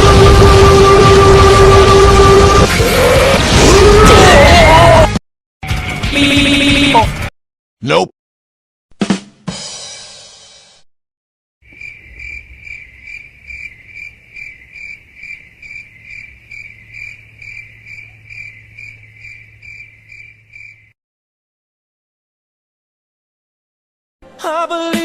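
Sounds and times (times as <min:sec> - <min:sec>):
crickets chirping: 0:11.6 - 0:20.9.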